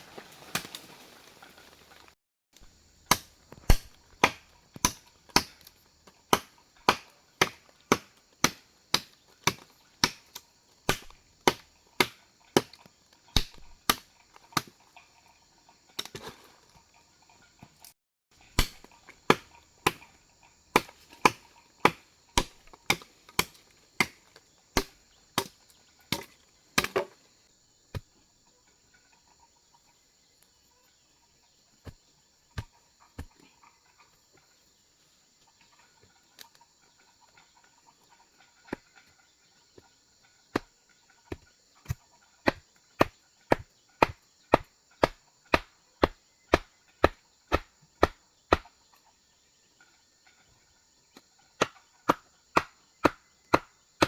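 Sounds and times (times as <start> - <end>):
chopping blows on wood: 3.1 - 5.6, 6.3 - 10.3, 10.9 - 12.8, 13.4 - 14.0, 18.6 - 20.0, 41.3 - 48.7, 51.6 - 53.7.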